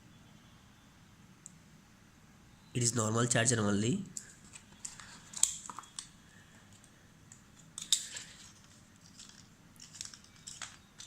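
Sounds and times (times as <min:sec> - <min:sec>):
small plastic items clicking: 0:06.7 - 0:11.0.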